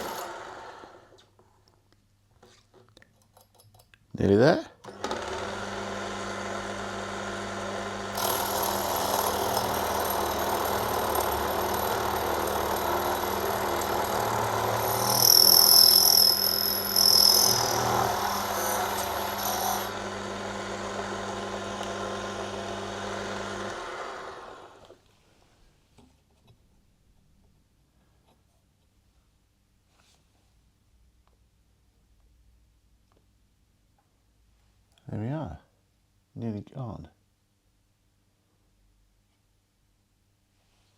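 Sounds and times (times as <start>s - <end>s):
lathe spinning down: 5.0s - 24.9s
metal lathe humming: 5.1s - 24.8s
tool cutting brass with squeal: 14.6s - 19.9s.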